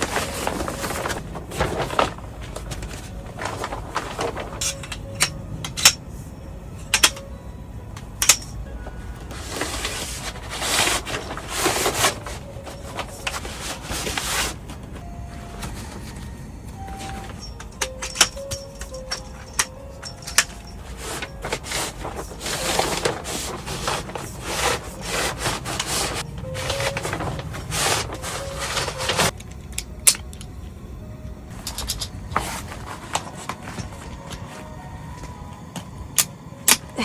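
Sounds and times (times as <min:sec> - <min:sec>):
rustling: 0:00.0 - 0:05.0, 0:08.8 - 0:29.4, 0:31.5 - 0:34.8
background music: 0:00.0 - 0:37.0.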